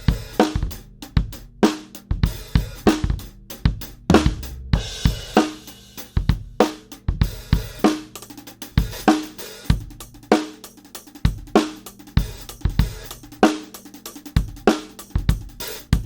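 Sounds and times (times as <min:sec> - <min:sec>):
hi-hat and cymbal: 0:00.0 - 0:16.0
snare drum backbeat: 0:00.1 - 0:08.2
kick drum thuds: 0:02.1 - 0:05.4.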